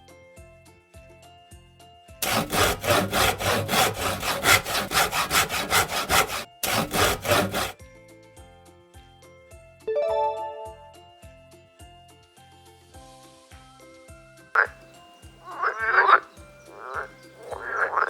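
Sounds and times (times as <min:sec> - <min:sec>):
rhythmic rasping strokes: 0:02.2 - 0:07.8
soft background music: 0:07.8 - 0:18.0.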